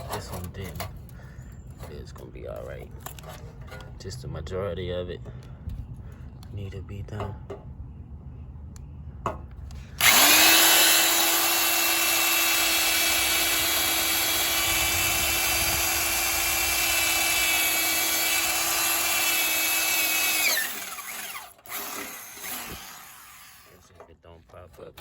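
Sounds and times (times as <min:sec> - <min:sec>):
power drill boring into steel: 0:10.0 - 0:23.8.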